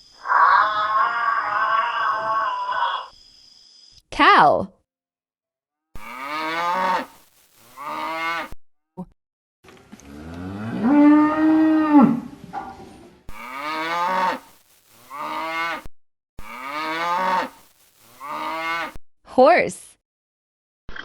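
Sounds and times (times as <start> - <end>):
cow mooing: 0.2 - 3.1, 6.0 - 7.1, 7.8 - 8.6, 10.0 - 12.4, 13.3 - 14.4, 15.1 - 17.6, 18.2 - 19.0.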